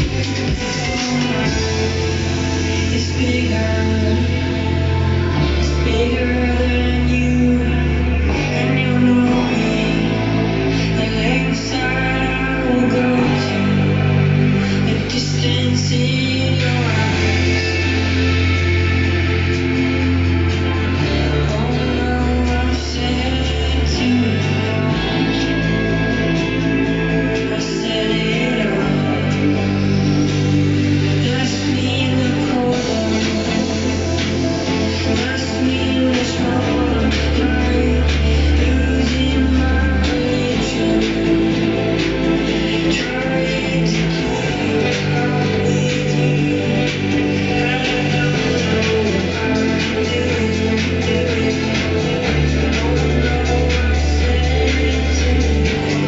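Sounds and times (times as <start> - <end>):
deep sustained bass notes: 0.0 - 56.0
pop song over loudspeakers: 0.0 - 56.0.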